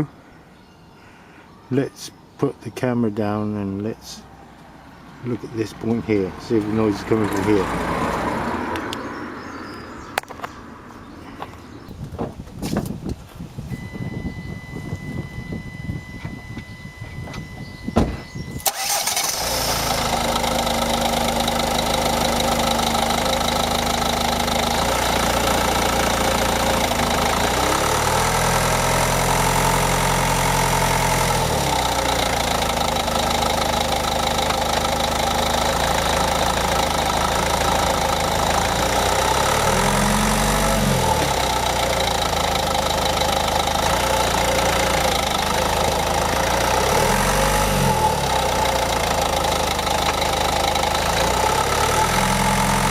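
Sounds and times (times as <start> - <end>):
car engine revving: 5.7 - 9.2, 18.6 - 52.9.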